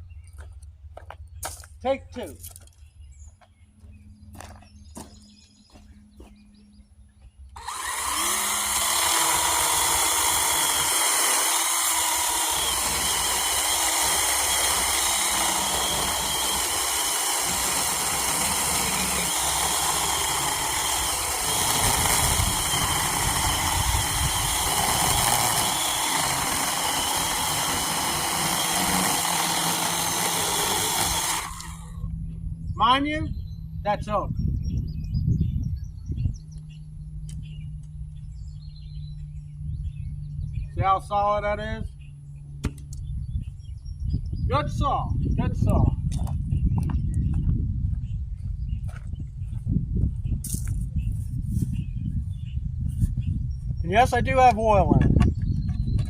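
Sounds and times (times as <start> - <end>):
battery chainsaw cutting log: 7.6 - 32.0.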